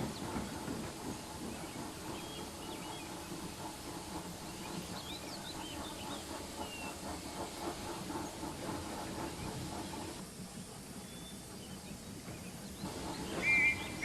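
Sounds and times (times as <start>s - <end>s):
birds chirping: 0.0s - 10.2s
steam locomotive running: 0.0s - 14.0s.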